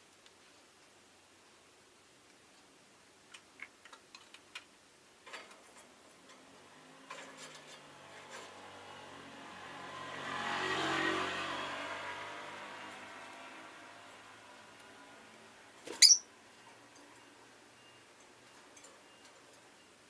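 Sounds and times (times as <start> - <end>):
vehicle engine passing: 7.7 - 15.5.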